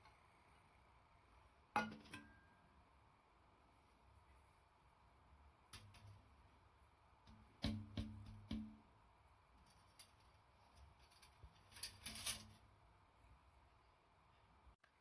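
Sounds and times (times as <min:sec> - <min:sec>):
clinking and scraping: 0:09.6 - 0:12.6
metal clinks and rattles: 0:09.6 - 0:12.6.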